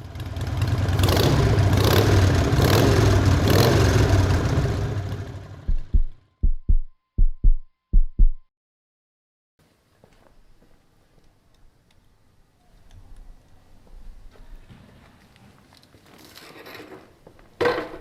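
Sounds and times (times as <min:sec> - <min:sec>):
deep heartbeat thumps: 0:05.6 - 0:08.5.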